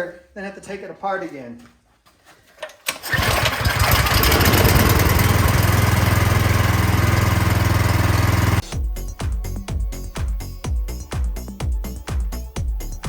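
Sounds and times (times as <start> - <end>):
snowblower engine starting and running: 2.9 - 8.6.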